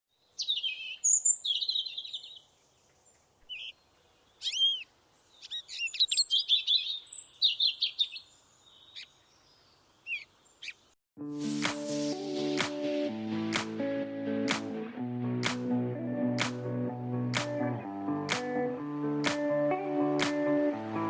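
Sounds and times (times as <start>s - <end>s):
songbirds singing: 0.1s - 11.0s.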